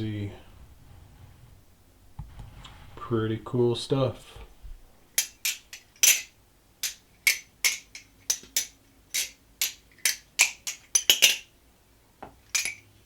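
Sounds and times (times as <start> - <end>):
butterfly knife clacking: 5.2 - 11.5.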